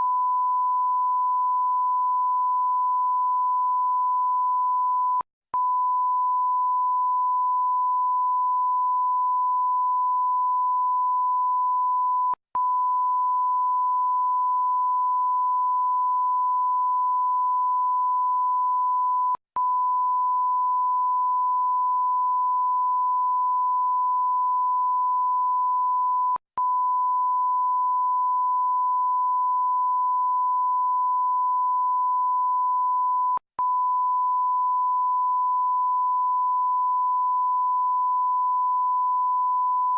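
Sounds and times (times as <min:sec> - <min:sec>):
electronic censor bleep tone: 0:00.0 - 0:39.9.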